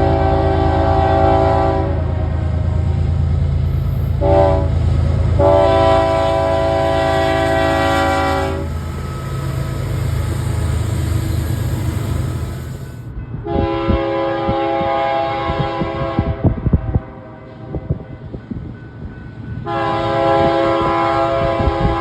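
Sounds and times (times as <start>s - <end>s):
locomotive air horn: 0.0s - 2.7s, 3.9s - 17.2s, 19.7s - 22.0s
train rumbling: 0.0s - 22.0s
wheels clicking on rails: 6.8s - 13.1s.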